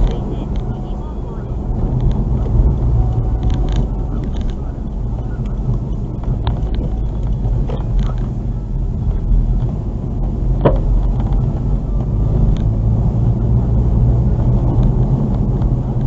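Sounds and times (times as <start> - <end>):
car road and engine rumble: 0.0 - 16.0
sharp clunk from car: 10.6 - 10.9.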